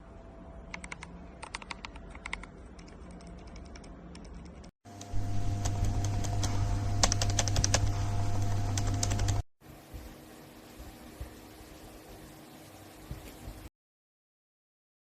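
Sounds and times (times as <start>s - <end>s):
steady low hum: 0.0s - 13.7s
soft keystroke clicks: 0.7s - 9.4s.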